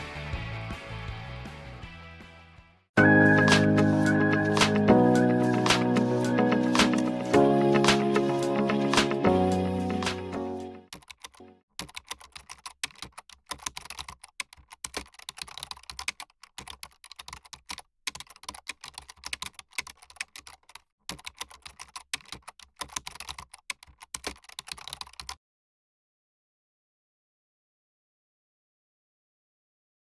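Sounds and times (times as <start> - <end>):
computer keyboard typing: 3.0 - 25.4.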